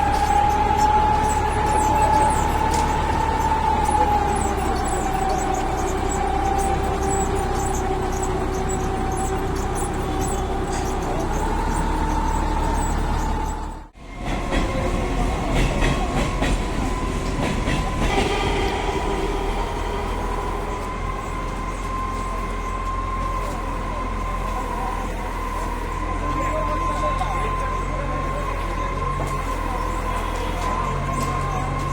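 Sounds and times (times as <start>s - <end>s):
rail vehicle rumbling: 0.0s - 31.9s
high whine: 17.1s - 31.7s.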